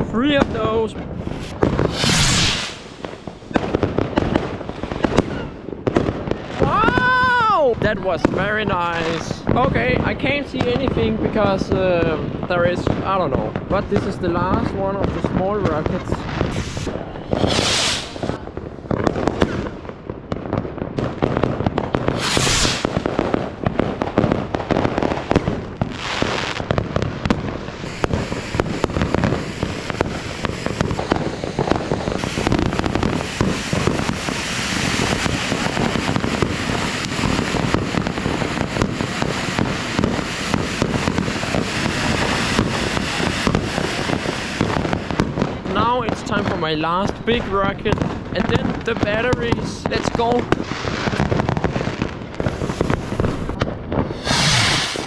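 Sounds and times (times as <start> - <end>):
fireworks crackling and banging: 0.0 - 55.0
firework launches hissing: 1.1 - 5.1, 15.9 - 19.7, 22.0 - 23.6, 27.6 - 45.3, 52.3 - 55.0.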